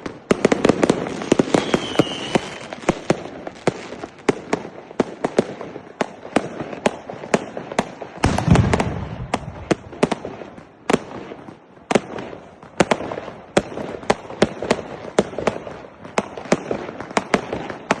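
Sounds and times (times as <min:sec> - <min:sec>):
firework bangs: 0:00.0 - 0:18.0
deep firework blast: 0:08.2 - 0:11.2.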